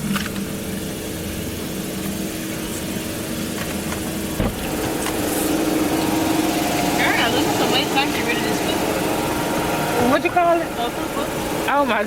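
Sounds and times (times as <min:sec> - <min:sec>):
car engine rumble inside cabin: 0:00.0 - 0:12.0
single knock: 0:04.4 - 0:05.1.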